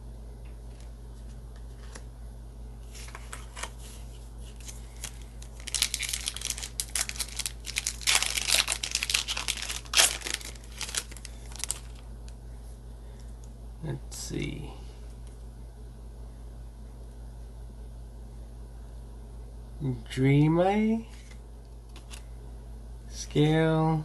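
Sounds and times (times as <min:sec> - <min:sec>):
wrapper crinkling and tearing: 0:02.9 - 0:12.1.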